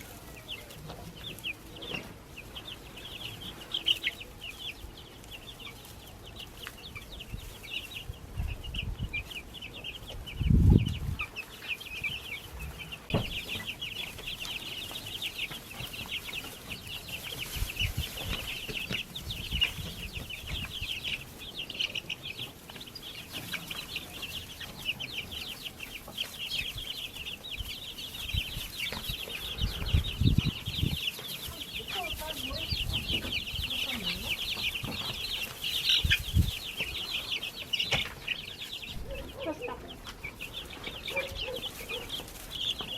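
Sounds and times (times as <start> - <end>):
baby chicks peeping: 0.0 - 42.9
low thump: 13.1 - 13.5.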